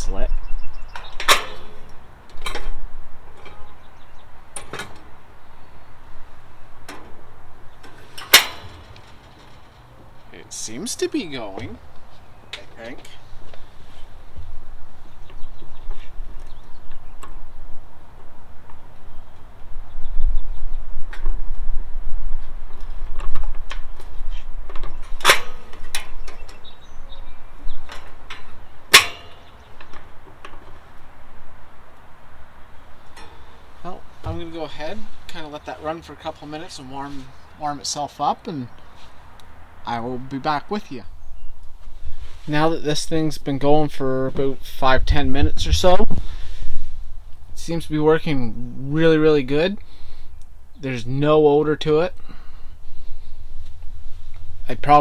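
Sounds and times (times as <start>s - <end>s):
sharp metallic clicks and knocks: 0.9s - 13.6s, 22.8s - 31.2s.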